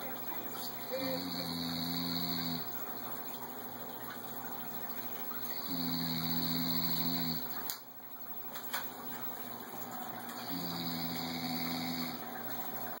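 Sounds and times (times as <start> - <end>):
man snoring: 1.0 - 2.7, 5.6 - 7.5, 10.4 - 12.2.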